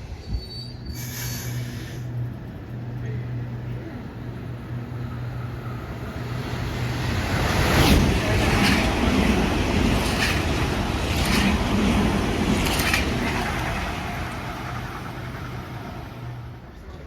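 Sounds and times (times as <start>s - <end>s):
train passing at speed: 0.0s - 17.0s
wheels clacking: 7.9s - 16.3s.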